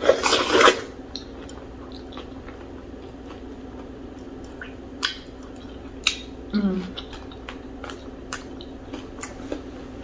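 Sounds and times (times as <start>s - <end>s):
soft wet chewing: 0.5s - 10.0s
mouth clicks and smacks: 4.4s - 6.3s.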